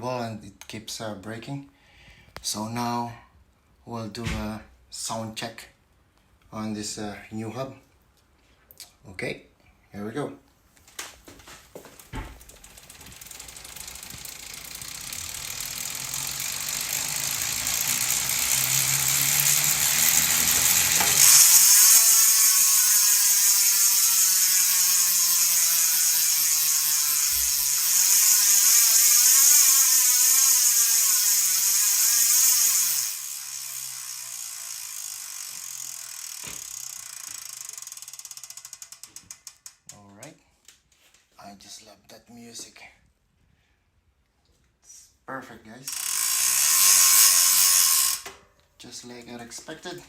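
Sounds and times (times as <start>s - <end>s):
freehub whirring buzz: 12.0s - 39.7s, 45.9s - 48.3s
freehub ticking: 12.0s - 39.9s.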